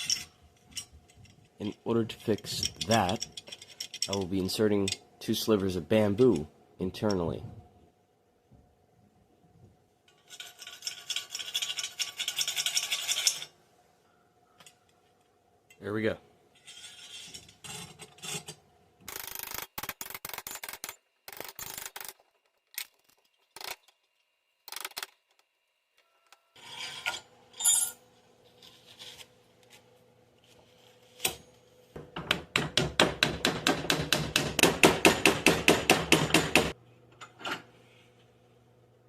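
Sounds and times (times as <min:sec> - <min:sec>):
hand scraping on metal parts: 0:00.0 - 0:05.0, 0:10.1 - 0:13.6, 0:16.5 - 0:19.7.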